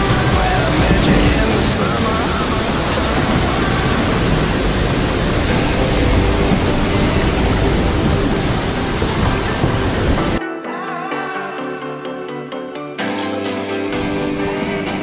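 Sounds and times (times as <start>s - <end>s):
wind buffeting microphone: 1.8s - 10.4s.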